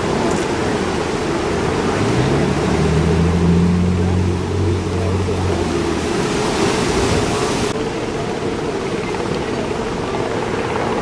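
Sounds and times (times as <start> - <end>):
ocean surf rushing: 0.0 - 11.0
low engine hum: 0.6 - 7.7.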